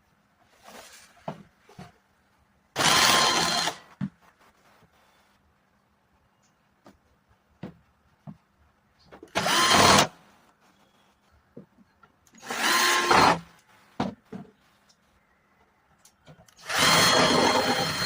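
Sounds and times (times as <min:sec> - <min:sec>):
power tool motor whining: 0:02.8 - 0:03.8, 0:09.3 - 0:10.1, 0:12.4 - 0:13.4, 0:16.6 - 0:18.0.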